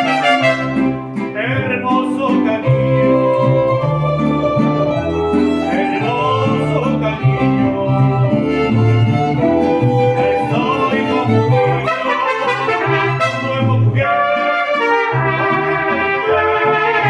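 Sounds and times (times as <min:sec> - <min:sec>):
violins playing melody: 0:00.0 - 0:01.1, 0:02.6 - 0:13.7, 0:14.3 - 0:17.0
strummed guitars: 0:00.0 - 0:17.0
plucked bass line: 0:01.0 - 0:12.0.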